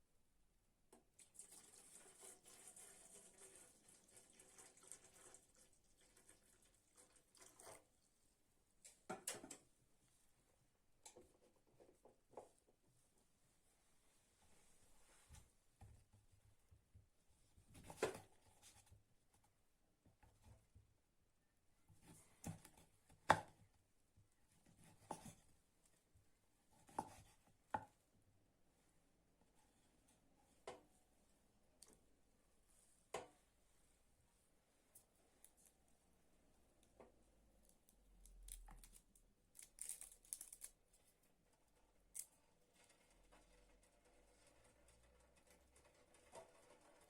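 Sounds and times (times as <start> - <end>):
faint knocks and clicks of handling: 11.0 - 13.0, 30.6 - 30.9.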